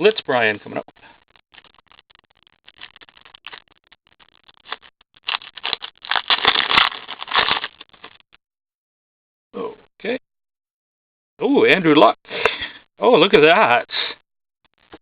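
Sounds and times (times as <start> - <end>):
wrapper crinkling and tearing: 1.0 - 8.3.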